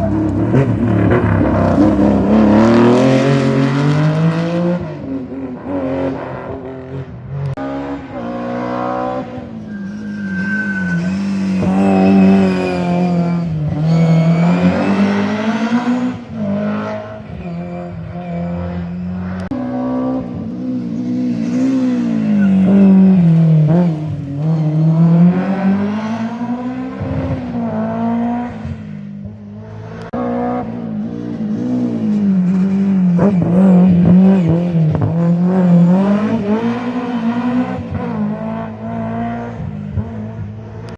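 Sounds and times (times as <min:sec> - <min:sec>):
rally car engines revving: 0:00.0 - 0:40.9
tyre squeal: 0:07.6 - 0:16.2, 0:17.1 - 0:19.7, 0:20.5 - 0:26.6.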